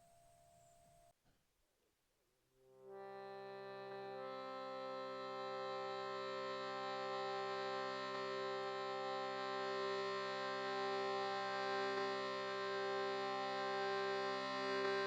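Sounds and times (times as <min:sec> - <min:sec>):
sustained musical drone: 0:03.0 - 0:15.0.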